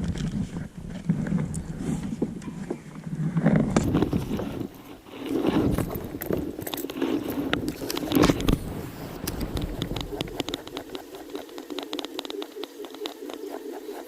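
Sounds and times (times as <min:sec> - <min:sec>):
paddle strokes swishing through water: 0:00.2 - 0:14.0.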